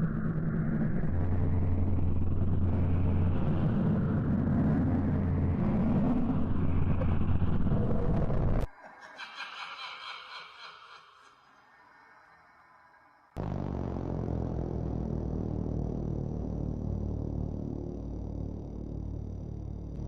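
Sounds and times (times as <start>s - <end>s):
loud deep rumble: 13.4s - 20.0s.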